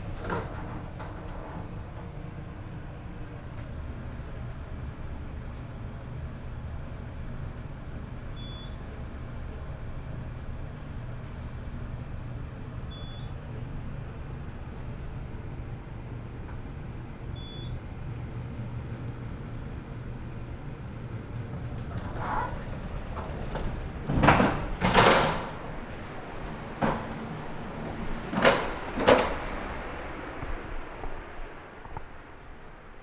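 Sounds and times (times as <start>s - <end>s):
elevator doors sliding: 0.0s - 7.8s, 8.4s - 33.0s
elevator humming: 0.0s - 33.0s
faint short beep: 8.4s - 8.8s, 12.9s - 13.4s, 17.4s - 17.8s.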